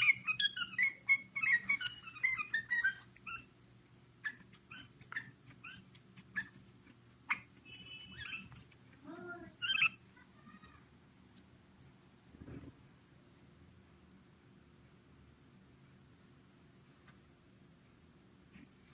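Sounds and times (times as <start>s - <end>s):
bird singing chirps and whistles: 0.0s - 3.5s.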